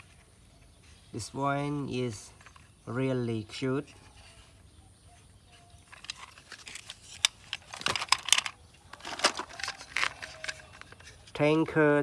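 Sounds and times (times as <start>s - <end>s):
crinkly rustling: 3.8s - 11.4s
plastic toy vehicles clicking: 5.8s - 11.6s.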